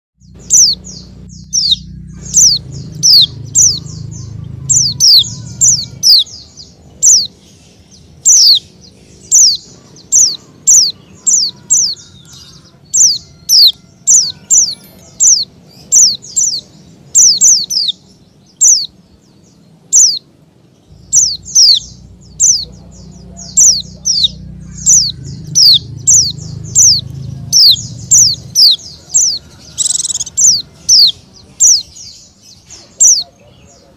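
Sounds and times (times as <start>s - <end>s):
bird chirping: 0.2s - 33.9s.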